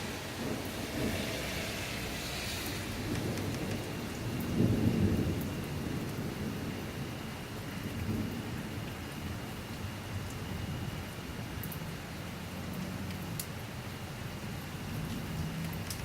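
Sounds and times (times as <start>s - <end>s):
thunder rumbling: 0.0s - 11.5s
steady rain: 0.0s - 16.0s.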